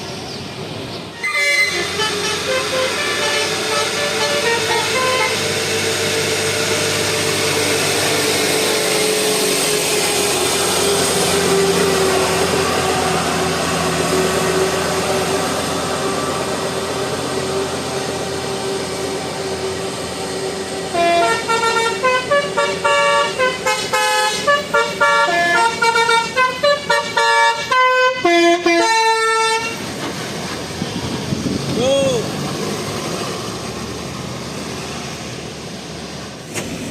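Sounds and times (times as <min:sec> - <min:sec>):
traffic noise: 0:00.0 - 0:36.9
melodic bus horn tune: 0:01.2 - 0:06.2, 0:20.9 - 0:29.8
steady drone: 0:01.5 - 0:25.8.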